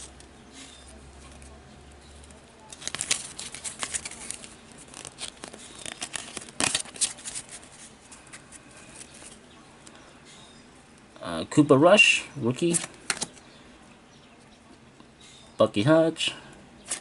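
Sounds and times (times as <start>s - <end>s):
card pack wrapper tearing: 2.7s - 9.4s.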